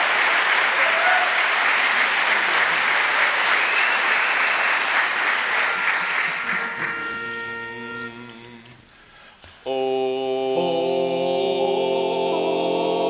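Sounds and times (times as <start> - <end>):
audience applauding: 0.0 - 7.6.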